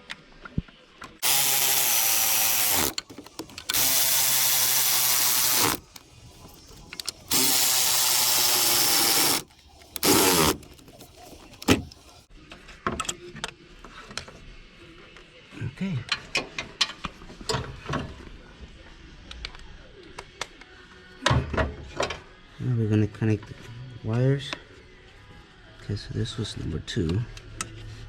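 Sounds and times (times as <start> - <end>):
cordless drill driving bolts: 1.2 - 12.2
tools clicking: 1.2 - 12.2.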